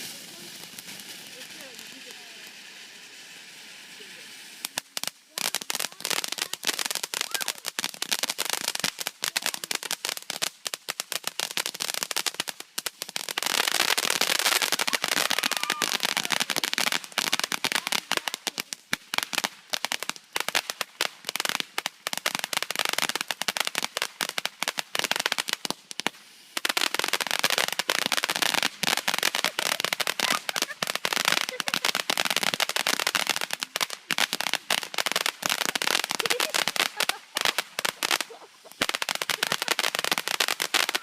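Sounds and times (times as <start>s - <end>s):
firecrackers crackling: 0.0s - 41.0s.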